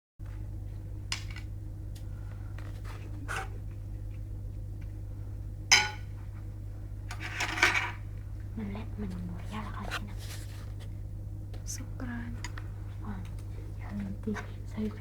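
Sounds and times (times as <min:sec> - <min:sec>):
steady low hum: 0:00.2 - 0:15.0
dishes and cutlery clinking: 0:05.7 - 0:06.1.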